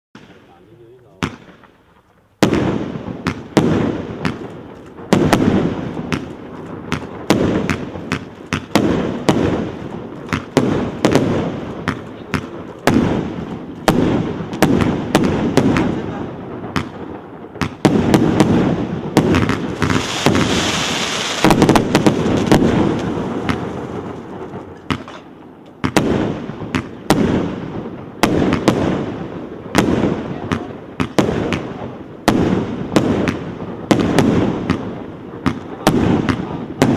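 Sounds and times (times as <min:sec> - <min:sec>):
fireworks launching and bursting: 0:00.2 - 0:36.9.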